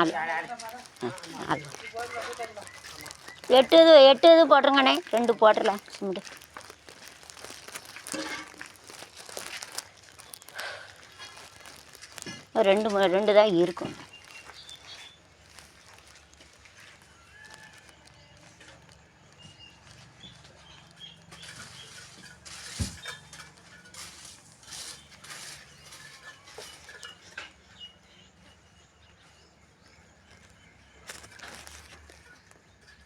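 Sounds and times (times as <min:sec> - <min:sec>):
masonry knocks and scrapes: 0:21.0 - 0:27.4.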